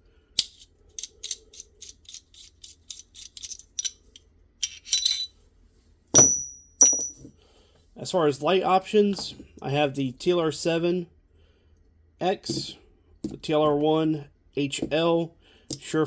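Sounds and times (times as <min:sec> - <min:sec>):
sharp metal clinks: 0:06.2 - 0:07.2.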